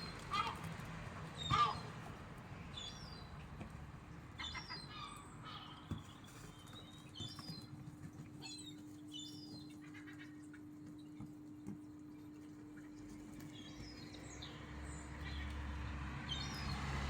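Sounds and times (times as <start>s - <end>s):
small birds chirping: 4.4s - 11.2s, 11.8s - 17.0s.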